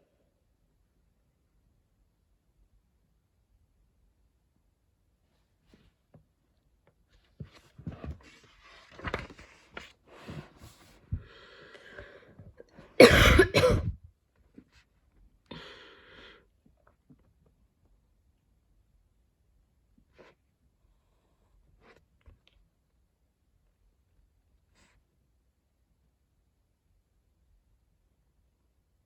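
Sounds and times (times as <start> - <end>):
breathing: 10.2 - 12.6, 15.5 - 16.6
throat clearing: 13.0 - 14.0
woman coughing: 13.0 - 14.0.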